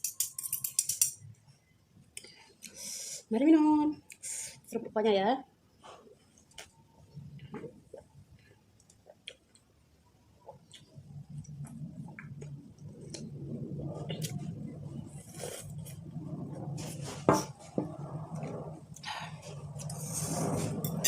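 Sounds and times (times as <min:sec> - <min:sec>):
cutlery and glassware clinking: 0:00.0 - 0:01.2
steady low hum: 0:03.9 - 0:21.0.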